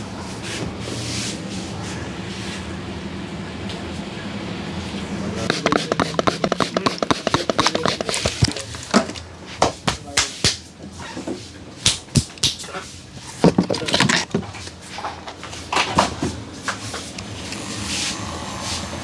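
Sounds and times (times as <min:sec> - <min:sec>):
hands slapping skin: 0:05.5 - 0:08.5, 0:09.6 - 0:10.6, 0:11.8 - 0:12.7.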